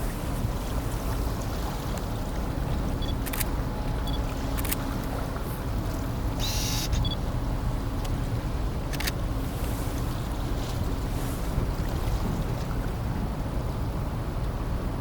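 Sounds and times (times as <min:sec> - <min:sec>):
boat passing: 0:00.0 - 0:15.0
high beeps: 0:06.4 - 0:07.2.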